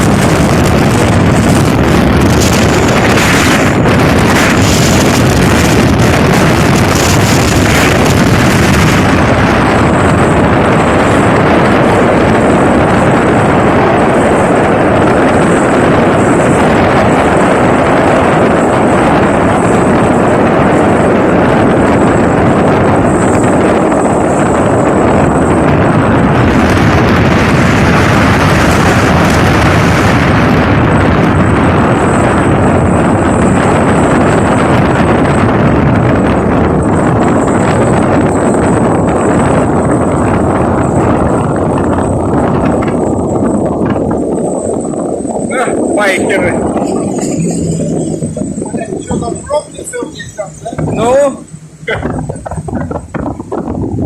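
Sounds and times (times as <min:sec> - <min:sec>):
motorboat engine: 0:00.0 - 0:54.0
rushing water: 0:00.0 - 0:54.0
wind buffeting microphone: 0:00.0 - 0:54.0.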